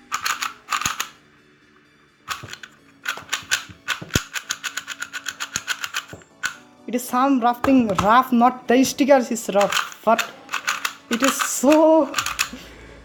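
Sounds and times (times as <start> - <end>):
plastic cube layers clicking: 0.0 - 1.2, 2.3 - 6.6, 9.5 - 12.6.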